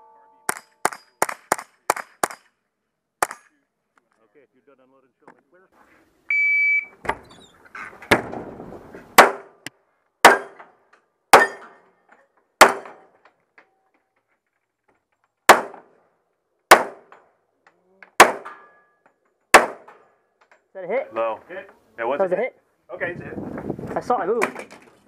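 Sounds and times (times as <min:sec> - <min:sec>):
gunshots: 0:00.5 - 0:02.4, 0:09.2 - 0:09.6, 0:12.6 - 0:13.0, 0:15.5 - 0:15.8, 0:16.7 - 0:17.1, 0:18.2 - 0:18.5, 0:19.5 - 0:19.9.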